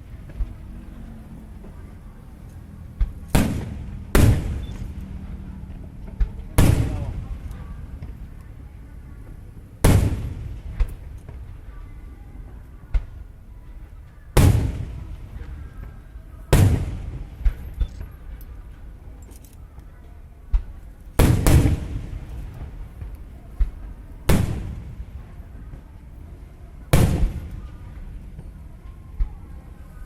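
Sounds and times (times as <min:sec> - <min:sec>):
faint crowd chatter: 0:00.0 - 0:30.0
firework booms: 0:03.0 - 0:05.0, 0:06.2 - 0:08.2, 0:09.8 - 0:11.6, 0:14.4 - 0:15.9, 0:16.5 - 0:17.7, 0:20.5 - 0:25.8, 0:26.9 - 0:28.6
small firework pops: 0:09.8 - 0:11.6, 0:12.9 - 0:13.2, 0:20.5 - 0:25.0.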